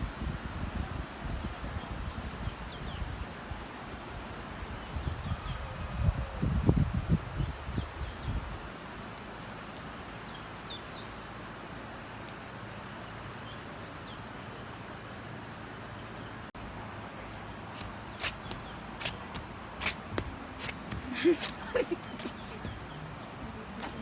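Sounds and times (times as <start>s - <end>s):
sharp clicks or footsteps: 17.8s - 22.8s.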